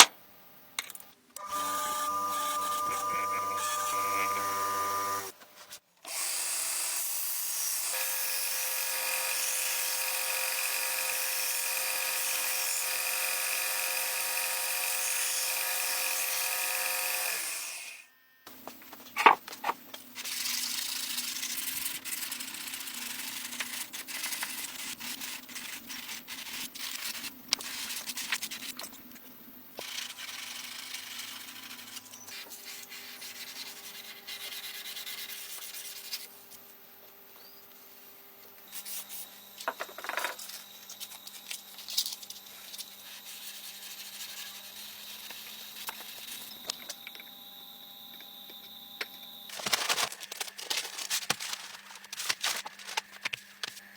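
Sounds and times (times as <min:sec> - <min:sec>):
electric power tool running: 0:01.4 - 0:05.3, 0:09.8 - 0:18.1.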